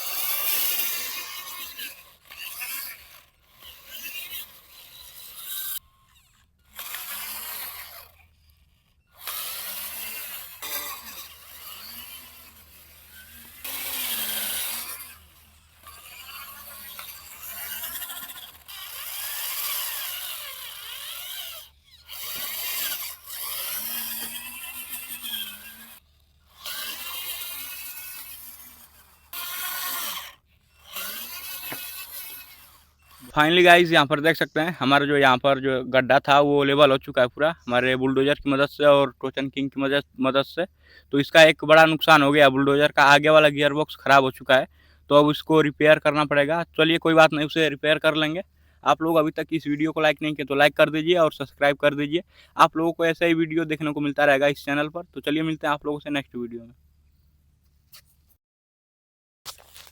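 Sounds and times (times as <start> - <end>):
toy motors whirring and grinding: 0.0 - 58.4, 59.5 - 59.9.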